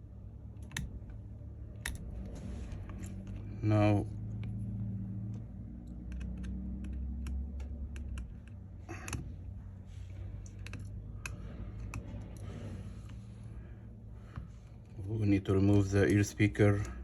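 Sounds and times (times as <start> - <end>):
steady low hum: 0.0 - 17.0
small tools clicking on phone parts: 0.4 - 3.5, 5.2 - 13.2.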